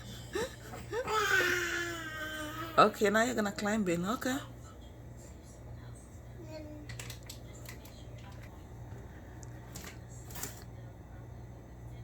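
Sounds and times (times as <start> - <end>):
refrigerator hum: 0.0 - 12.0
child handling things clicking: 6.8 - 8.5.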